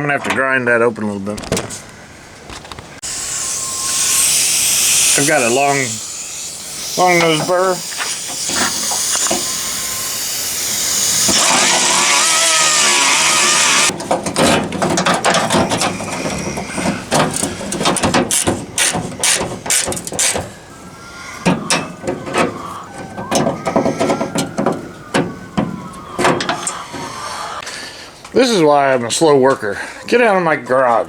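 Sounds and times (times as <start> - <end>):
parts clicking and knocking: 1.4 - 27.1
rotary tool grinding: 3.0 - 14.0, 15.2 - 24.5.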